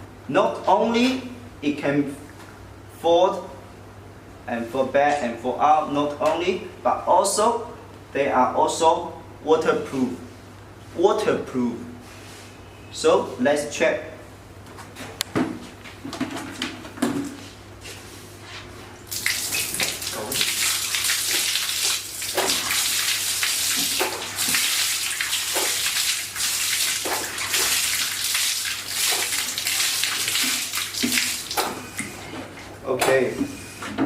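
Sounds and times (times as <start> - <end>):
water splashing over light: 19.1 - 31.8.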